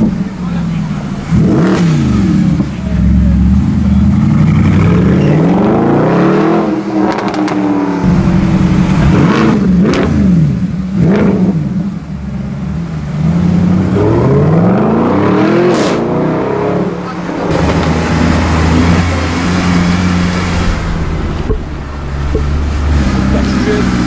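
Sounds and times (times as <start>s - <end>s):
car engine revving: 0.0s - 24.0s
exhaust crackles and pops: 19.7s - 24.0s.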